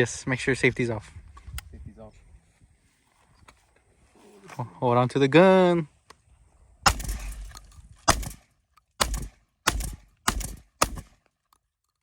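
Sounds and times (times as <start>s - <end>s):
shotgun shots: 6.8s - 11.2s.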